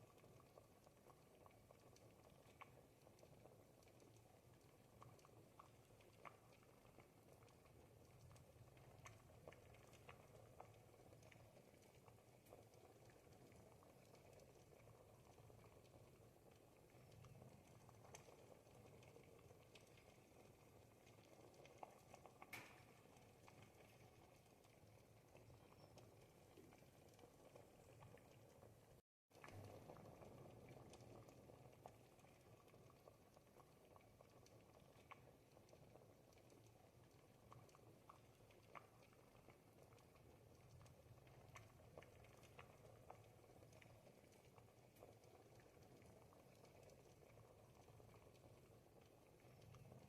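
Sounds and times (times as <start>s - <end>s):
soup bubbling in a pot: 0.0s - 50.0s
small pops: 21.5s - 24.1s.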